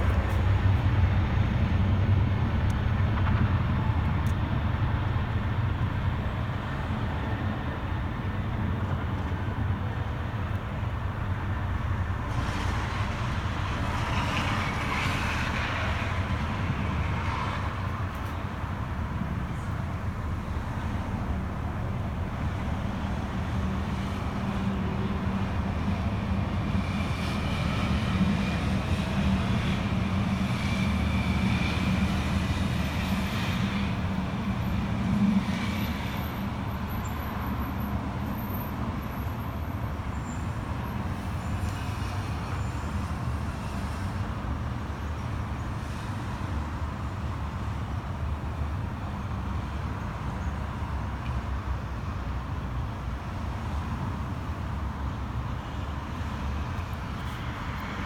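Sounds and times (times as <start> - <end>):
helicopter rotor and engine: 0.0 - 11.8.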